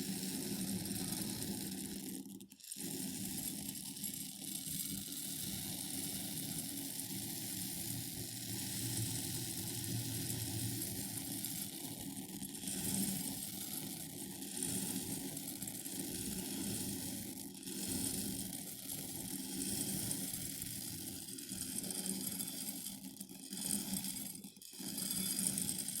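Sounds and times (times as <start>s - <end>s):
grains pouring into a glass bowl: 23.8s - 26.0s.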